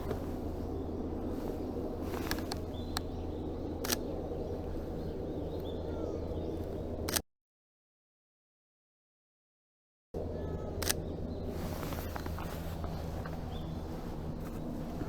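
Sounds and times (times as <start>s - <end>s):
faint bird chirps: 0.0s - 6.9s, 10.2s - 15.0s
outdoor background noise: 0.0s - 7.2s, 10.2s - 15.0s
sharp clicks: 3.8s - 4.2s, 10.8s - 11.1s.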